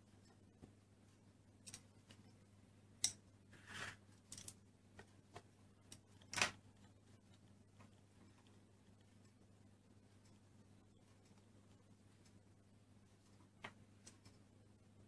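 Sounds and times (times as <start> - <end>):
plastic tools clicking and tapping: 1.6 - 2.2.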